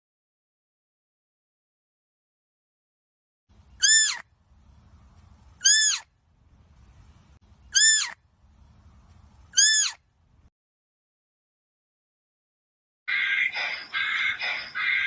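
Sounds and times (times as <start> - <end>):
faint low rumble: 3.5 - 10.5
deer calling: 3.8 - 4.2, 5.6 - 6.1, 7.7 - 8.2, 9.5 - 10.0, 13.1 - 15.0.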